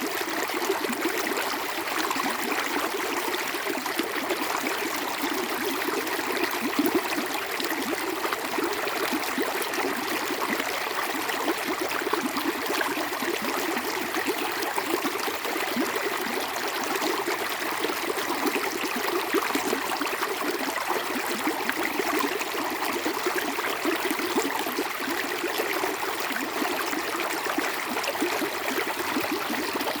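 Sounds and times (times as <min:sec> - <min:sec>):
stream water flowing: 0:10.0 - 0:30.0.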